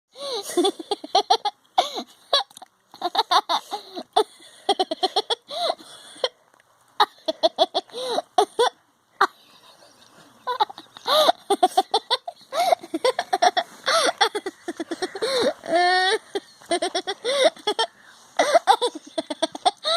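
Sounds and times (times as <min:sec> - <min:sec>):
person giggling: 0:00.2 - 0:06.4, 0:07.0 - 0:19.9.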